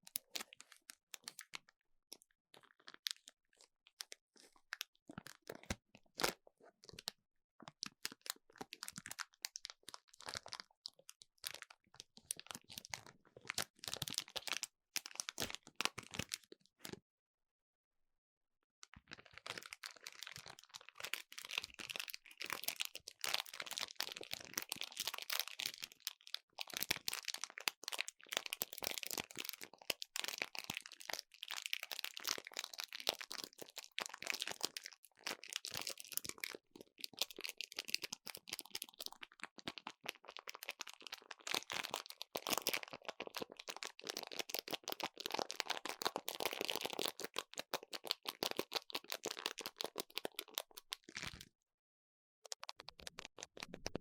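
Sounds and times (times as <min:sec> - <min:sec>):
close crinkling and crunching: 0:18.9 - 0:51.5, 0:52.5 - 0:54.0.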